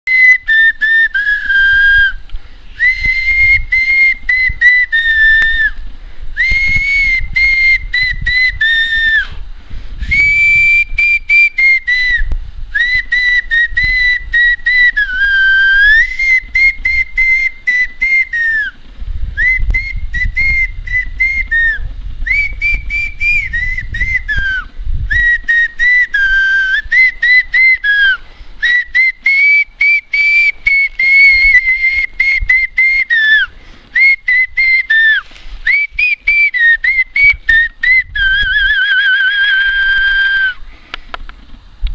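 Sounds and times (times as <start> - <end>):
person whistling a melody: 0.1 - 5.8, 6.4 - 9.4, 10.0 - 18.8, 19.4 - 40.6.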